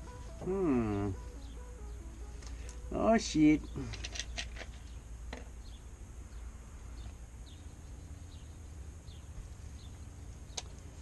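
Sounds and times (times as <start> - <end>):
steady low rumble: 0.0 - 11.0
faint bird chirps: 0.5 - 4.0.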